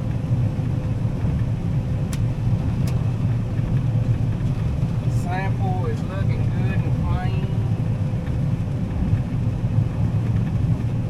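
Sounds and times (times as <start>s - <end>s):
combine harvester engine drone: 0.0s - 11.0s
light ticks: 2.1s - 3.0s.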